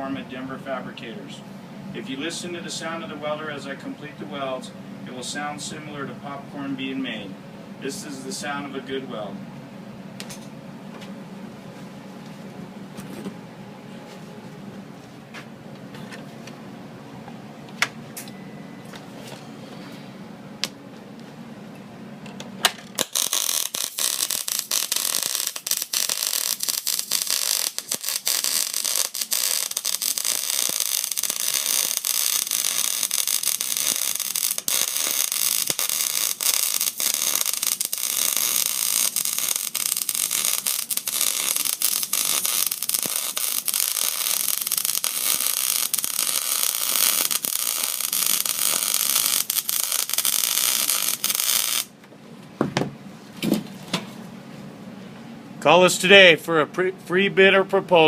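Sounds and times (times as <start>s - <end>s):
welding arc crackling: 22.8s - 52.0s.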